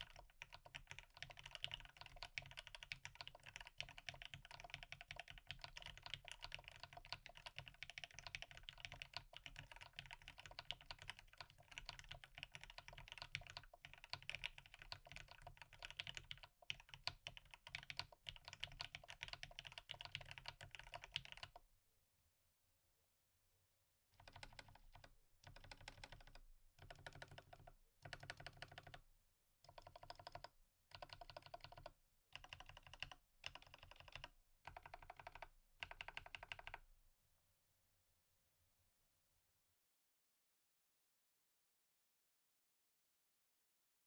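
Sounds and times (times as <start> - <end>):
fast mechanical keyboard typing: 0.0 - 21.6, 24.2 - 29.0, 29.7 - 36.8.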